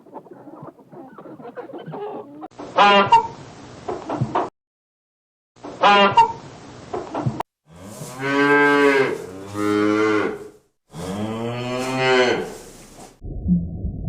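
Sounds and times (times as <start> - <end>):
cattle mooing: 7.7 - 12.6.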